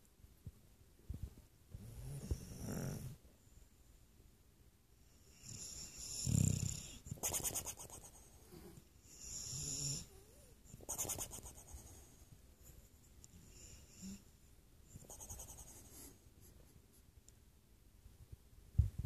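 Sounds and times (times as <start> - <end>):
low buzzing snore: 1.8 - 3.2, 5.3 - 7.1, 7.8 - 10.5.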